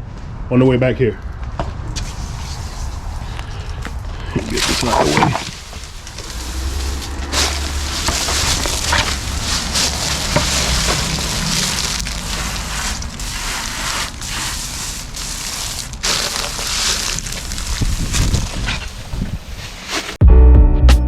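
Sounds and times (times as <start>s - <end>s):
low engine hum: 1.2s - 15.9s
pressure washer spraying stone: 2.0s - 19.2s.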